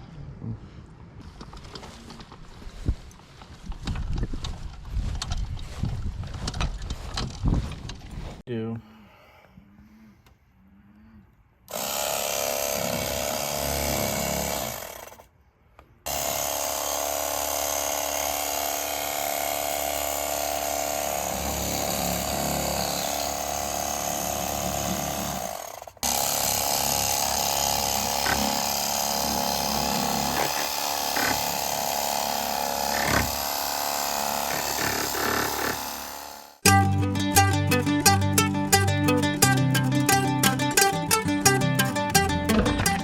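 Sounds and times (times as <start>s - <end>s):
electric knife motor whine: 20.6s - 36.6s.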